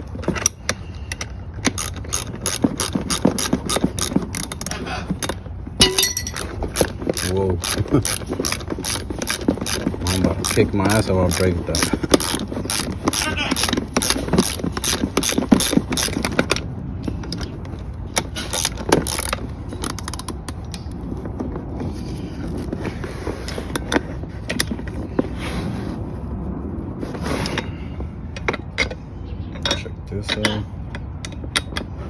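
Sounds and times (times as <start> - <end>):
ratchet wrench clicking: 1.1 - 4.7, 11.3 - 16.2
metal parts clinking: 5.8 - 9.8.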